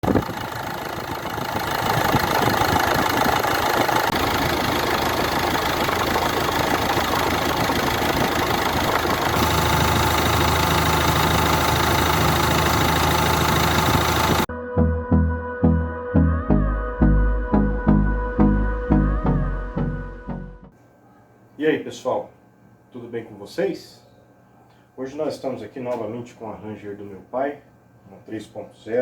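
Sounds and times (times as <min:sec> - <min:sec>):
diesel engine idling: 0:00.0 - 0:14.5.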